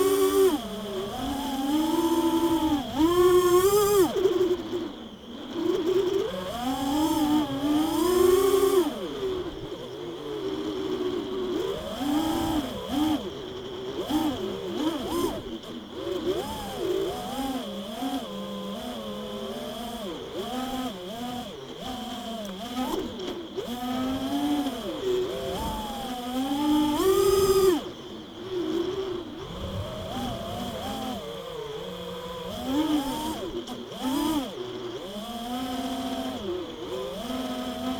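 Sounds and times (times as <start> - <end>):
quadcopter motors buzzing: 0.0 - 37.9
steady high whine: 27.8 - 33.6.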